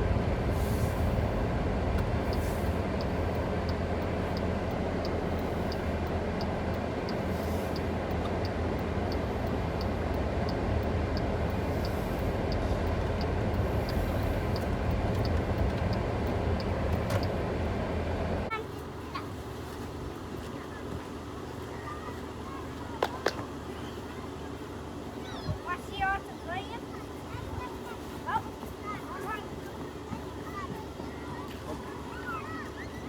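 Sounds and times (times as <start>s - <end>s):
faint even ticking: 0.0s - 18.5s
vehicle engine and road rumble: 0.0s - 33.0s.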